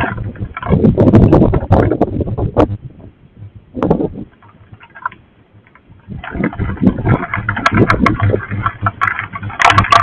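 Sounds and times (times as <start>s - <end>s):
wind gusts buffeting microphone: 0.0s - 10.0s
faint scattered ticks and taps: 4.3s - 10.0s.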